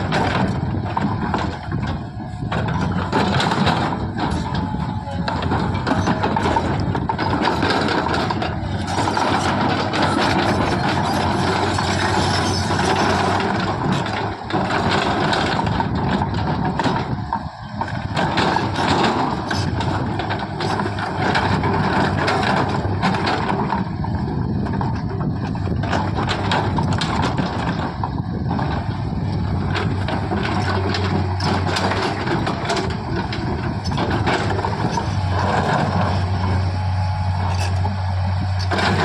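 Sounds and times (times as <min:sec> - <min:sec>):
metallic knocks and clatter: 0:00.0 - 0:17.1, 0:29.6 - 0:36.6, 0:38.6 - 0:39.0
diesel engine running: 0:00.0 - 0:39.0.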